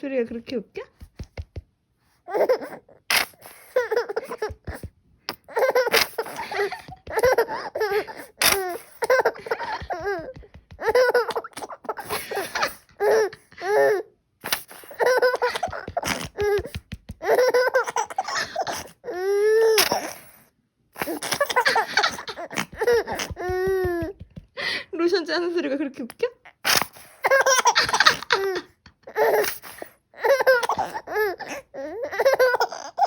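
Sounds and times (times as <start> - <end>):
baby laughing: 2.3 - 14.0, 14.9 - 20.2, 21.0 - 24.8, 27.2 - 33.0
lotion bottle squirting: 15.5 - 16.9.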